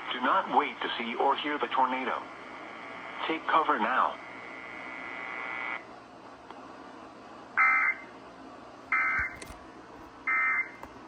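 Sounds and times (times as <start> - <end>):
faint radio static hiss: 0.0 - 11.0.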